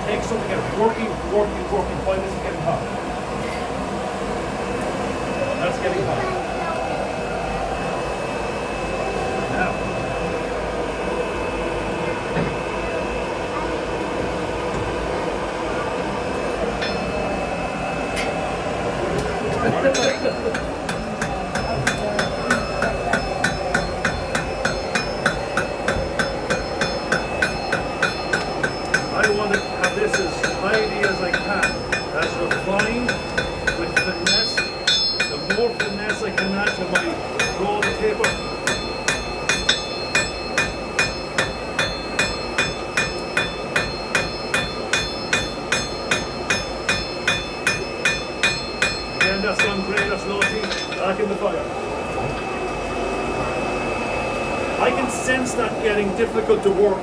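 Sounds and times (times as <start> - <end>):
hammer striking iron on anvil: 16.8 - 17.6, 19.7 - 51.4.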